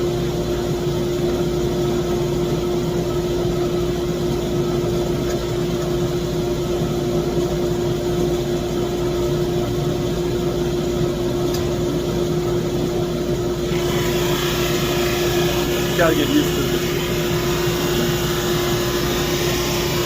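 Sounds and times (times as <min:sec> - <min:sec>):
drum sander humming: 0:00.0 - 0:20.0.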